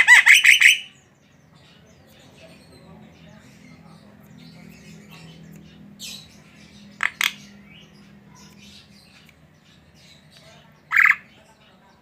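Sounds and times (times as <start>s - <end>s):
myna bird squawking: 0.0s - 1.0s, 10.9s - 11.4s.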